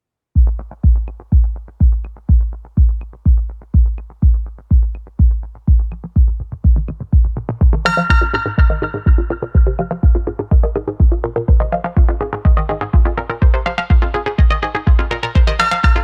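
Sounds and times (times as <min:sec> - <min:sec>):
electronic dance music: 0:00.4 - 0:16.0
heavy kick drum: 0:00.4 - 0:16.0.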